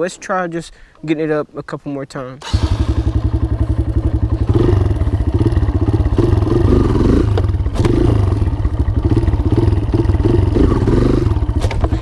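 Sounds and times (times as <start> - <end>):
dirt bike engine revving: 2.4 - 12.0.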